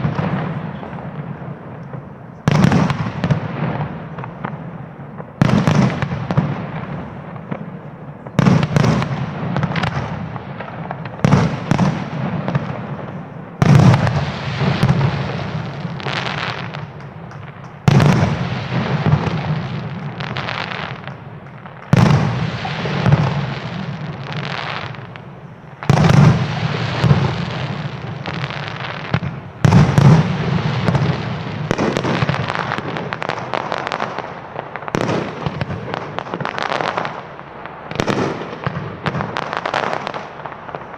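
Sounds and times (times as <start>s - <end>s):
smaller firework bursts: 0.0s - 40.9s
firework shells bursting: 8.4s - 37.1s.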